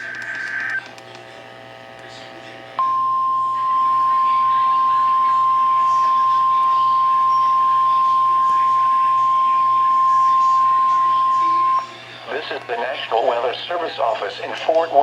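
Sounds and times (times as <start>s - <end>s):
steady alarm tone: 2.8s - 12.0s.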